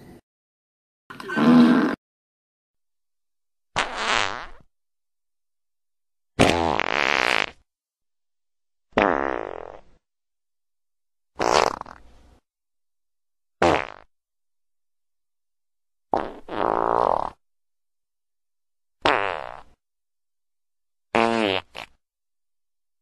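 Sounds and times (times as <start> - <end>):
fart sound effects: 1.2 - 2.0, 3.8 - 4.7, 6.4 - 7.6, 8.9 - 10.0, 11.4 - 12.0, 13.6 - 14.1, 16.1 - 17.4, 19.0 - 19.8, 21.1 - 22.0.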